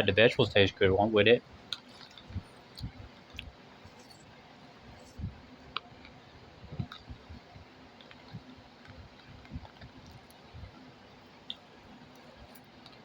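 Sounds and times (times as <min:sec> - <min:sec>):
fan hiss: 0:00.0 - 0:13.0
person chewing food: 0:01.7 - 0:04.3.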